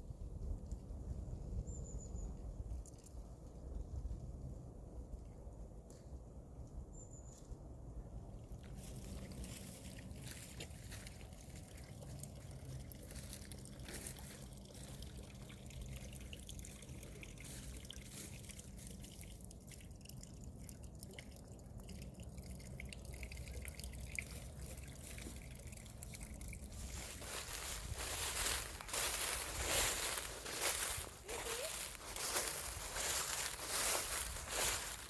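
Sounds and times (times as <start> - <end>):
water trickling and dripping: 8.3 - 35.0.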